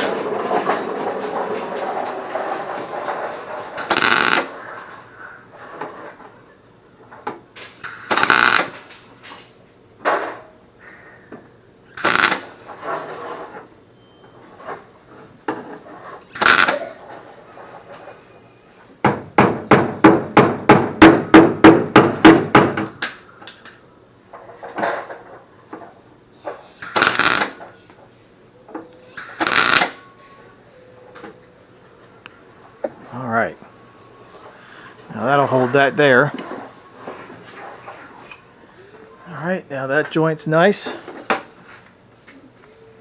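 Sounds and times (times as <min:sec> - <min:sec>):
harsh noise bursts: 0:03.8 - 0:04.7, 0:08.1 - 0:08.8, 0:12.0 - 0:12.6, 0:16.3 - 0:16.9, 0:26.8 - 0:27.6, 0:29.4 - 0:30.0.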